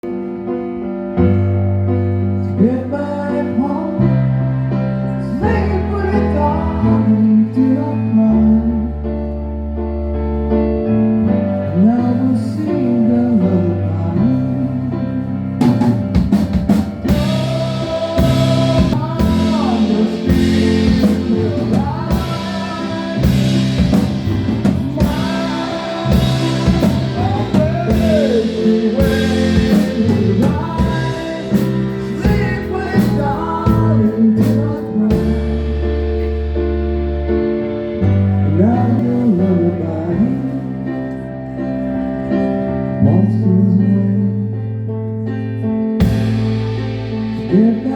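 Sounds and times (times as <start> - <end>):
bass line: 0.0 - 47.9
keyboard chords: 0.0 - 47.9
drum kit beat: 15.6 - 38.4, 46.0 - 47.9
gliding melody line: 16.9 - 41.3.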